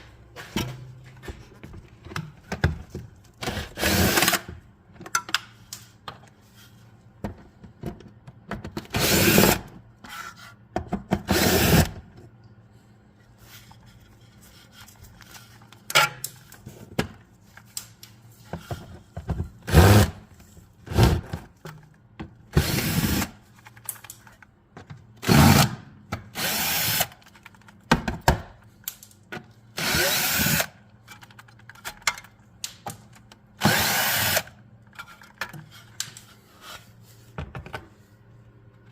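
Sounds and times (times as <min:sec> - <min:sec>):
power tool bursts: 0:33.6 - 0:34.5.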